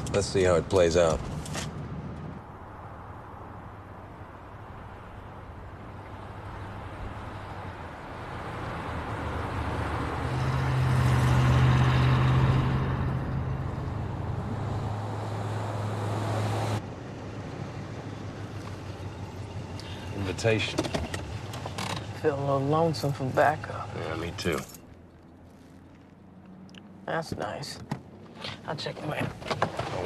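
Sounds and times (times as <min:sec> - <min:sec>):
car driving past: 0:08.2 - 0:16.8.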